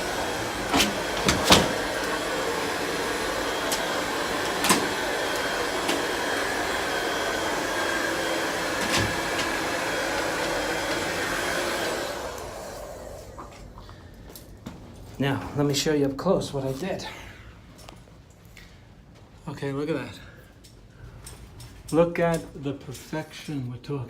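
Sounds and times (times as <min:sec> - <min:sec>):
heat gun blowing: 0:00.0 - 0:13.7.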